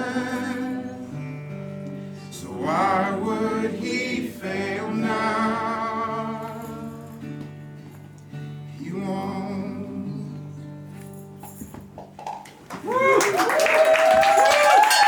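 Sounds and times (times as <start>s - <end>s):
voices singing gospel song: 0.0s - 7.5s, 8.8s - 10.6s
acoustic guitar: 0.0s - 13.2s.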